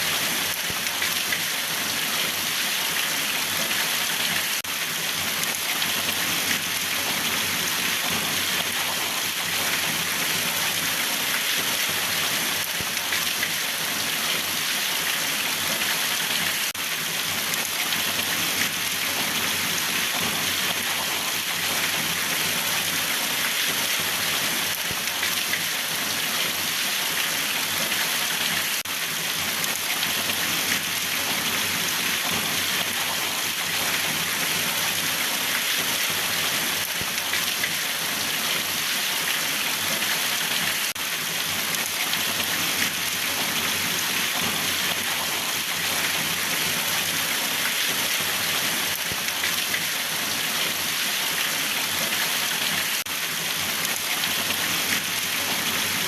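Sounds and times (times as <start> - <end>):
rain pattering on surface: 0.0 - 56.0.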